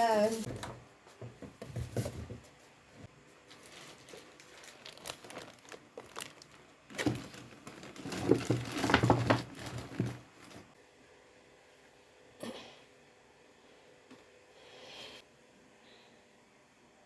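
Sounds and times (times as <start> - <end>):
packaging rustling and crinkling: 3.3 - 10.8.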